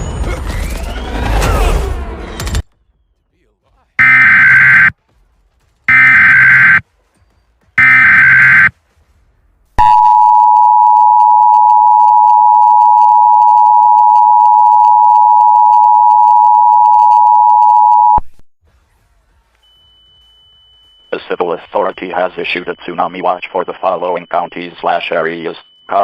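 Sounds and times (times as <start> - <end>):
buzzy digital data bursts: 4.0 - 4.9, 5.9 - 6.8, 7.8 - 8.7
two-tone attention signal: 4.0 - 4.9, 5.9 - 6.8, 7.8 - 8.7, 9.8 - 18.2.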